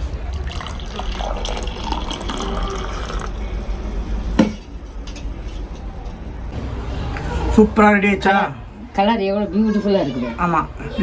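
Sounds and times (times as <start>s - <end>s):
liquid pouring into a glass: 0.1s - 3.4s.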